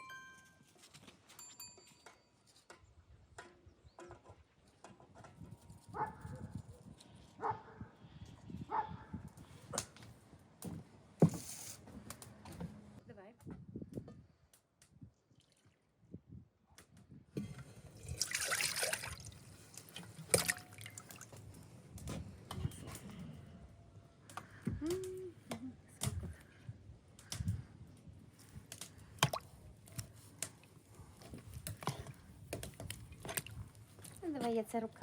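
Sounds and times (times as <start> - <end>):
water pouring or sloshing: 17.8 - 21.4
water splashing and dripping: 18.0 - 21.5, 28.8 - 29.5, 32.6 - 34.2.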